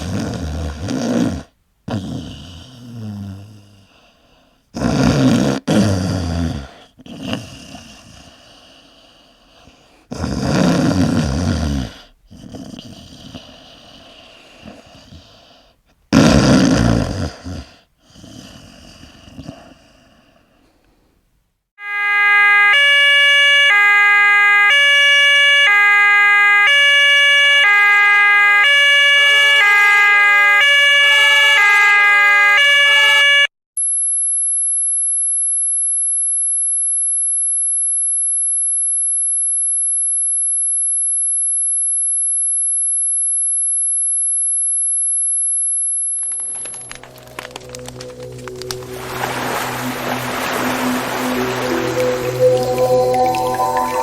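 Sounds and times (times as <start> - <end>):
two-tone hi-lo siren: 21.8 - 33.5, 47.0 - 54.0
steady high-pitched tone: 46.7 - 54.0.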